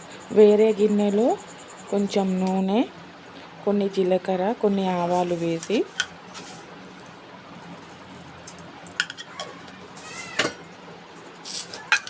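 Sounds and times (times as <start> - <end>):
metal utensils and pots clinking: 7.8 - 10.6, 11.5 - 12.0.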